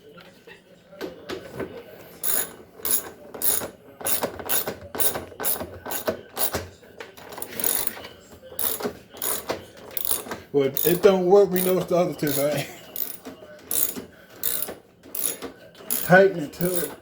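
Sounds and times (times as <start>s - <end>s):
ratchet wrench clicking: 2.2s - 6.6s, 7.4s - 8.0s, 8.6s - 17.0s.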